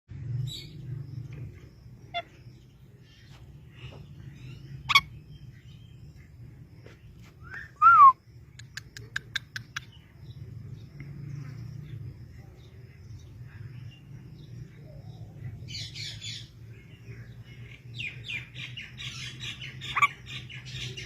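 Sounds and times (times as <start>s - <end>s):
parrot squawking: 4.9s - 5.2s, 19.8s - 20.2s.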